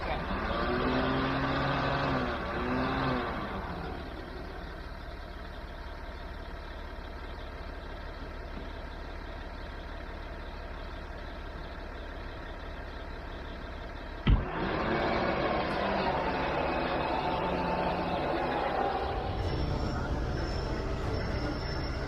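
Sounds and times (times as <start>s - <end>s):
vehicle engine idling: 0.0s - 22.0s.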